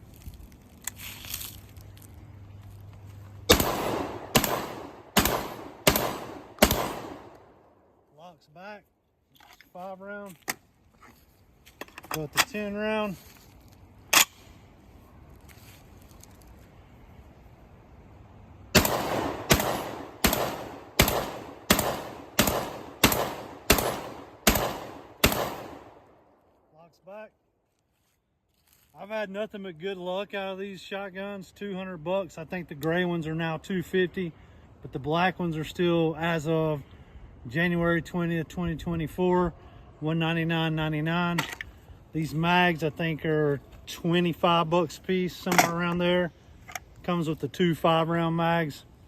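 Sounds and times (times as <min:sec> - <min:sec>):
shotgun shots: 0:03.5 - 0:07.4, 0:18.7 - 0:26.0.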